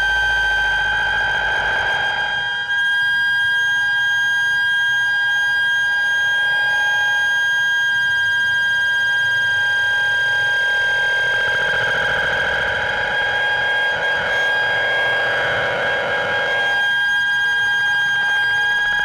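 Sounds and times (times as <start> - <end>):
low wavering synth layer: 0.0 - 2.0.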